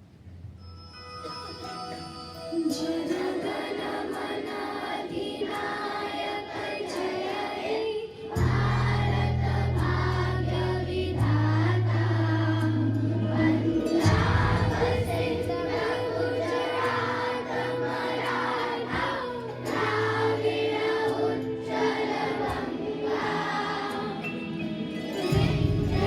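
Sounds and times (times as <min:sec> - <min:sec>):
musical accompaniment: 0:00.6 - 0:05.6, 0:08.3 - 0:26.0
children's choir singing: 0:02.5 - 0:26.0
low accompanying notes: 0:08.4 - 0:24.2.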